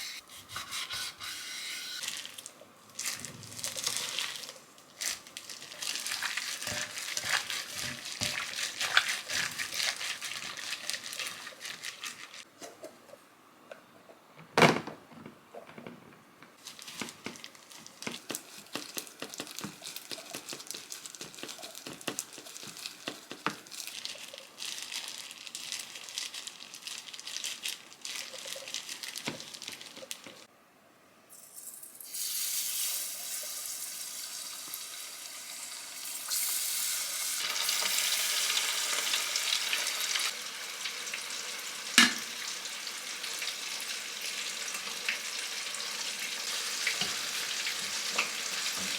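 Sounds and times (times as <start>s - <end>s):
kitchen crinkling and rattling: 0.0s - 30.5s, 45.9s - 48.9s
food sizzling in a pan: 3.0s - 12.5s, 31.3s - 48.9s.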